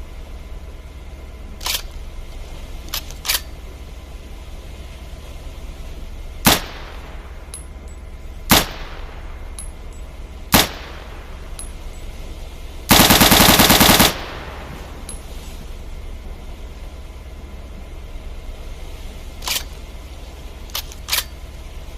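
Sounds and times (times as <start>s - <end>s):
single gunshots: 6.4s - 7.2s, 8.5s - 9.3s, 10.5s - 11.2s
automatic gunfire burst: 6.5s - 6.9s, 8.5s - 9.0s, 10.5s - 11.0s, 12.9s - 14.8s.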